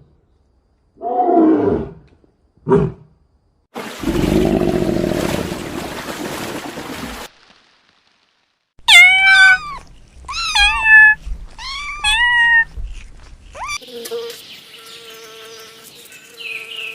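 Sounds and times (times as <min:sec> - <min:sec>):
lion roaring: 0:04.0 - 0:05.4
cat meowing: 0:08.8 - 0:13.8.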